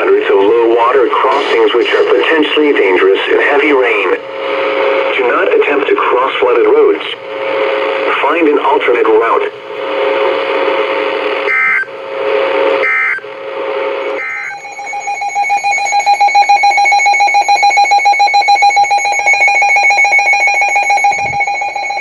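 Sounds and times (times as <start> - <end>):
radio hiss: 0.0 - 15.0
pulsing attention tone: 0.8 - 4.1, 14.2 - 22.0
chirpy digital data bursts: 14.2 - 22.0.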